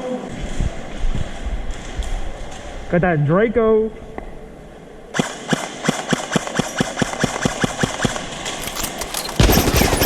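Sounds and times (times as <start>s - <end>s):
loud dense gunfire: 8.6s - 10.0s
airsoft gun rapid shots: 8.7s - 10.0s.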